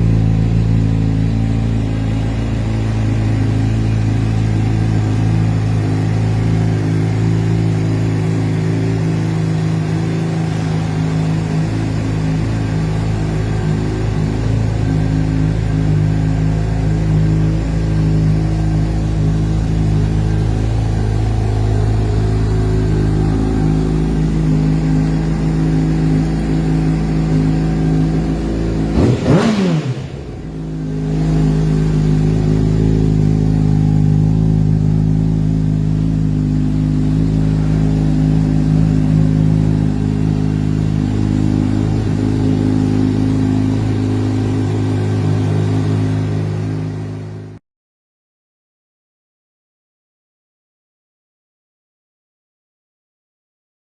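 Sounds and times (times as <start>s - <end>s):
motorcycle engine idling: 0.0s - 47.6s
engine throttle blip: 9.8s - 47.4s.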